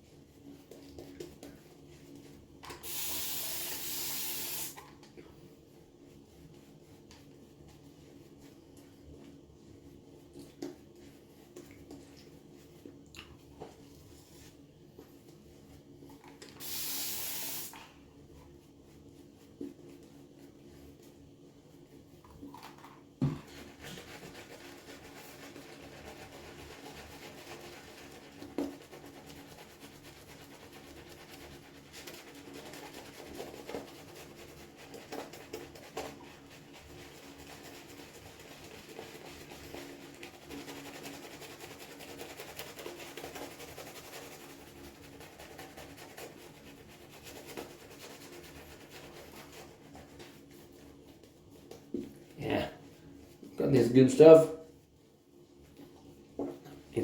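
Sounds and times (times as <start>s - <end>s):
shaving brush rubbing lather: 0.0s - 4.8s, 14.1s - 17.8s, 23.4s - 54.9s.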